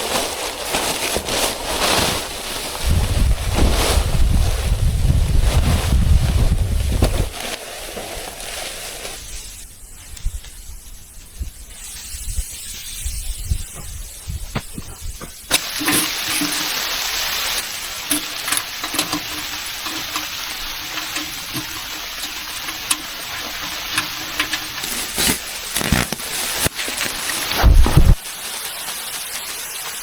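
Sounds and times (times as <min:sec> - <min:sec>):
stirring clicks: 0:15.5 - 0:28.2
food sizzling in a pan: 0:15.5 - 0:30.0.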